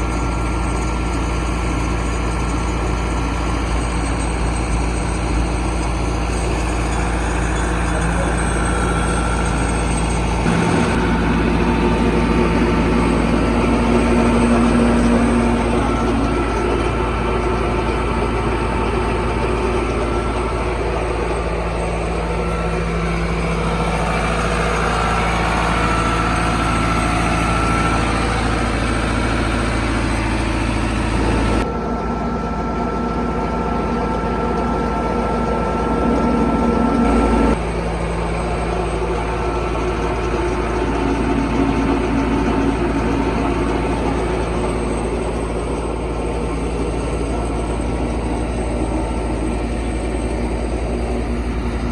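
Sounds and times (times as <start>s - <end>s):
machine engine droning: 0.0s - 51.9s
steady tones: 3.8s - 31.6s.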